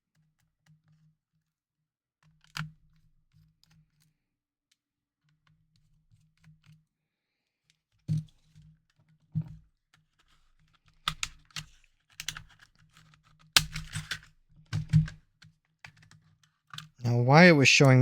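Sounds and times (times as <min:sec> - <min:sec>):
small parts clicking and tapping: 0:10.2 - 0:17.0.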